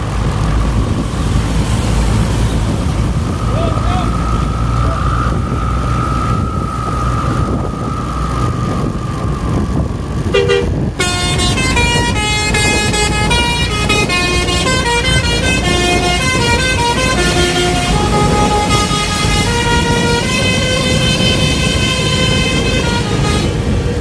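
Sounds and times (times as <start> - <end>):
low engine rumble: 0.0 - 24.0
bus horn playing melody: 10.2 - 24.0
horn blip: 10.4 - 23.6.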